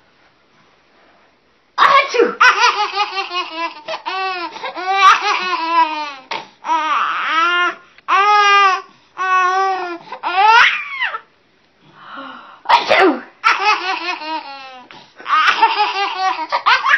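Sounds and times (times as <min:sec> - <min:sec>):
woman sneezing: 0:01.8 - 0:02.4, 0:12.7 - 0:13.4
baby laughing: 0:02.4 - 0:11.3, 0:13.4 - 0:16.9.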